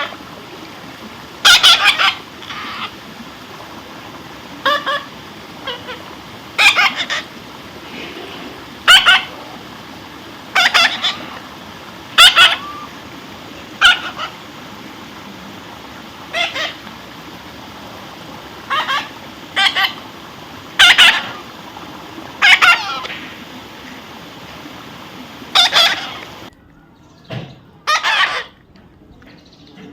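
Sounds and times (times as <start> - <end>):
parrot squawking: 1.4 - 2.9, 4.6 - 6.0, 6.6 - 7.3, 8.8 - 9.4, 10.5 - 11.5, 12.1 - 13.0, 13.8 - 14.4, 16.3 - 16.8, 18.6 - 20.0, 20.8 - 21.5, 22.4 - 24.0, 25.4 - 26.5, 27.9 - 28.5.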